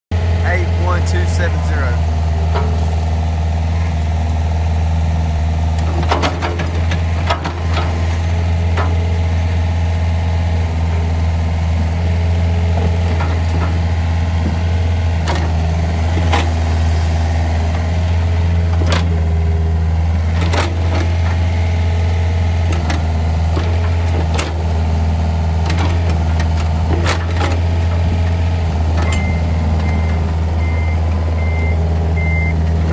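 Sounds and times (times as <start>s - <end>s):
excavator diesel engine running: 0.1s - 32.9s
travel alarm beeping: 29.1s - 32.6s.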